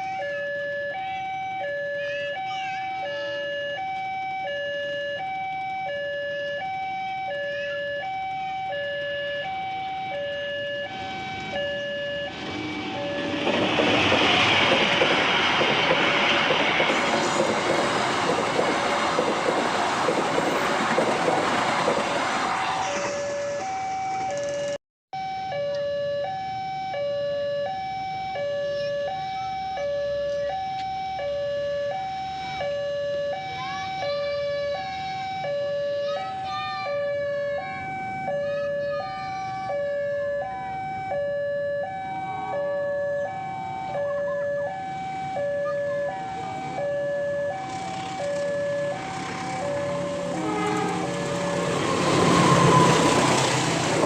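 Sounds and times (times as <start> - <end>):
level crossing two-tone alarm: 0.0 - 13.5, 22.8 - 53.8
train wheels rushing on rails: 10.9 - 24.8, 46.1 - 54.0.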